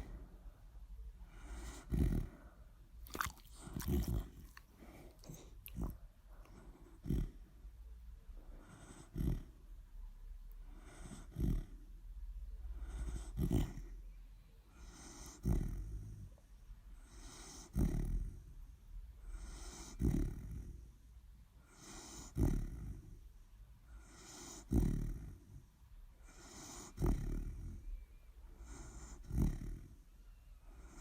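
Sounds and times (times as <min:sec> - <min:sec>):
dog snoring: 0:01.3 - 0:07.5, 0:08.5 - 0:09.6, 0:10.6 - 0:12.0, 0:12.7 - 0:14.0, 0:14.7 - 0:18.6, 0:19.2 - 0:20.9, 0:21.6 - 0:23.2, 0:23.9 - 0:25.6, 0:26.2 - 0:28.0, 0:28.6 - 0:30.1, 0:30.7 - 0:31.0.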